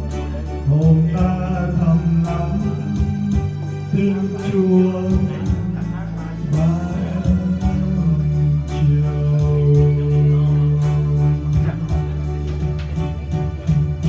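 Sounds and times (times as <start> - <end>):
bass: 0.0 - 14.0
guitar: 0.0 - 14.0
steady beat: 0.0 - 14.0.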